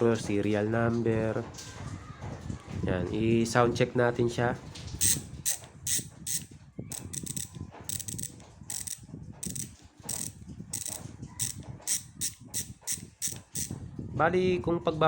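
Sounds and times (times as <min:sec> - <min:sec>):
bicycle hub pawls clicking: 0:05.0 - 0:13.8.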